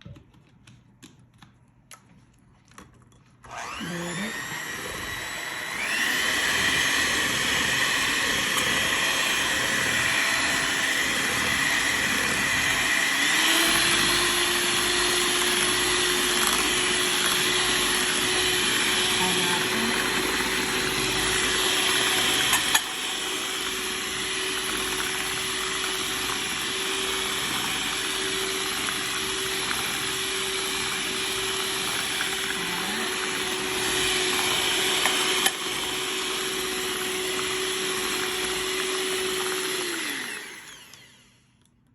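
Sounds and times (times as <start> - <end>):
electric mixer beating batter: 3.5 - 41.4.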